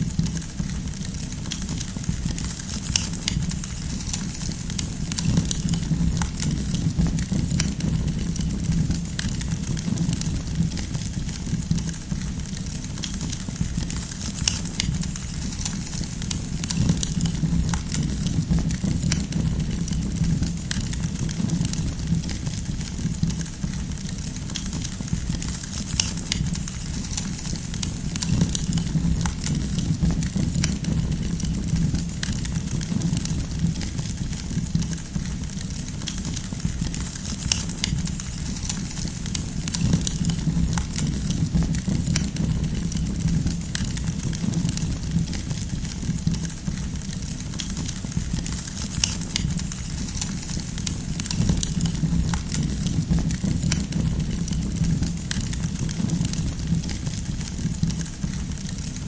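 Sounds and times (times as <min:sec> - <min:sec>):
campfire crackling and popping: 0:00.0 - 0:59.0.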